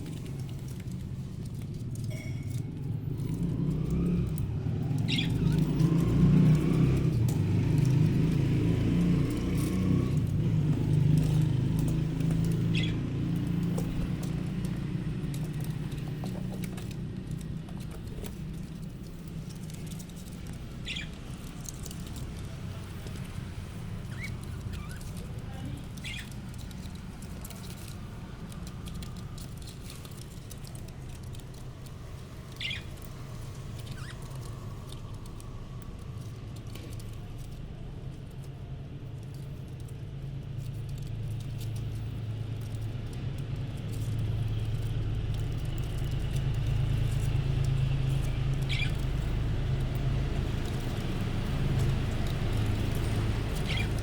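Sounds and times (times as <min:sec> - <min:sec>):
budgerigar chirps: 0:48.7 - 0:49.0.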